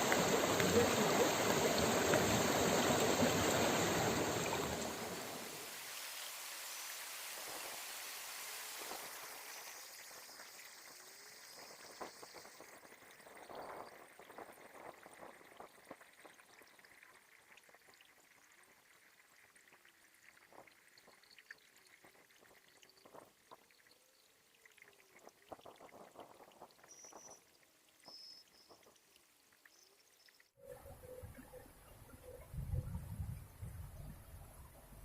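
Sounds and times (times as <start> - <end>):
water trickling: 0.0 - 6.2, 9.2 - 35.0
small splashes or drips: 12.3 - 30.6.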